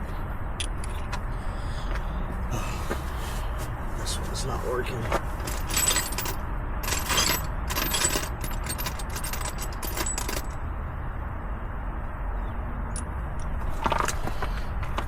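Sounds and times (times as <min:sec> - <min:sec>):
metal tools clinking and rattling: 0:05.2 - 0:10.6.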